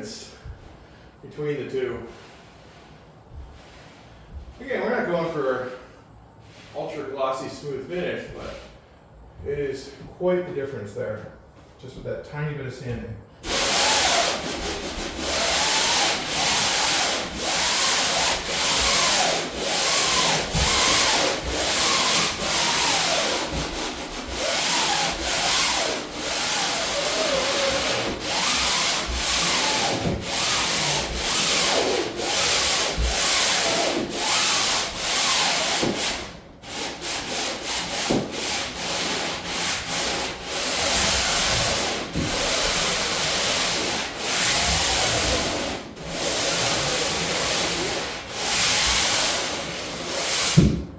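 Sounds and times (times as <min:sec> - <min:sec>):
sandpaper rubbing on plywood: 0:13.4 - 0:50.7.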